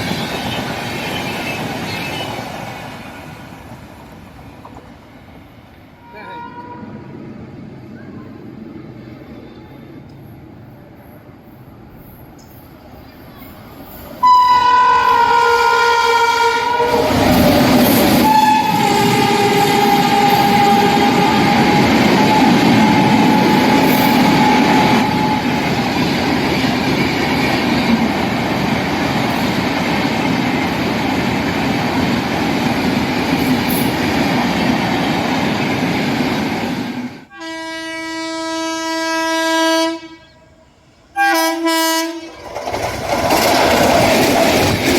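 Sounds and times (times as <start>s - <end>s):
train coaches rushing and clattering: 0.0s - 37.6s, 41.3s - 44.9s
low train horn: 6.0s - 7.0s, 14.2s - 25.7s, 37.3s - 42.4s
train horn: 6.0s - 7.0s, 14.2s - 25.6s, 37.3s - 42.4s.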